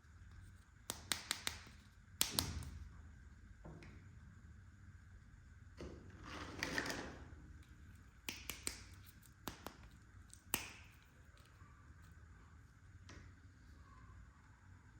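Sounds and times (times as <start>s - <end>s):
plastic pieces clicking and tapping: 8.2s - 11.5s.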